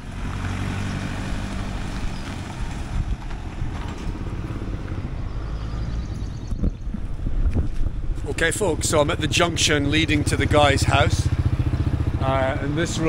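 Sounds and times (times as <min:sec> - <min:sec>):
road and rushing air noise: 0:00.0 - 0:13.0
motorbike engine running: 0:08.3 - 0:13.0.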